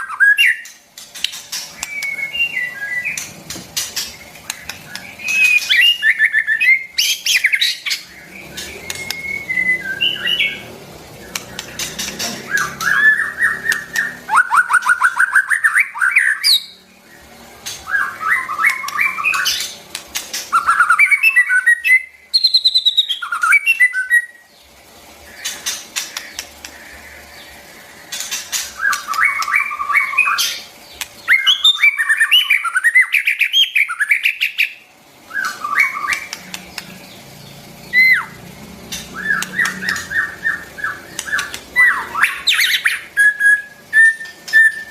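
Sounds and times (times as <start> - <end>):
bird singing whistled phrases: 0.0 - 0.7, 1.8 - 3.2, 4.9 - 10.6, 12.4 - 16.8, 17.9 - 19.7, 20.5 - 24.4, 31.3 - 36.4, 37.9 - 38.4, 39.2 - 44.9.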